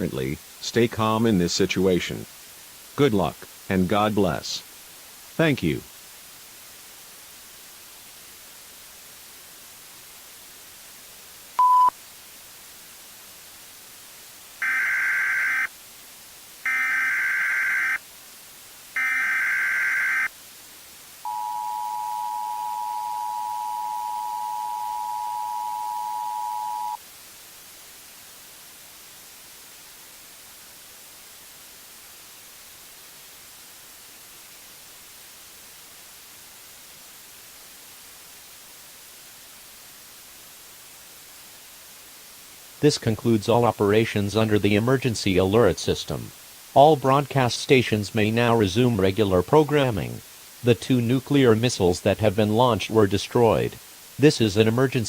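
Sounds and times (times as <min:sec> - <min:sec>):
static hiss: 0:00.0 - 0:55.0
short beep: 0:11.6 - 0:11.9, 0:21.3 - 0:27.0
two-tone attention signal: 0:11.6 - 0:11.9, 0:19.0 - 0:20.3, 0:21.3 - 0:27.0
warbling data bursts: 0:14.6 - 0:15.7, 0:16.7 - 0:18.0, 0:21.3 - 0:27.0.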